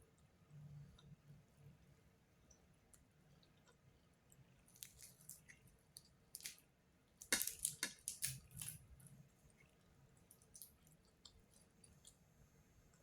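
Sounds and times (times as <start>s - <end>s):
cat chewing wetly: 2.6s - 6.6s.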